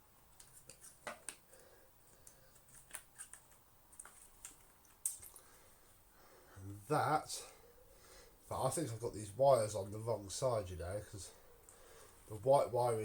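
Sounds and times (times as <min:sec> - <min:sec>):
plastic parts clicking and scraping: 0:02.2 - 0:05.4.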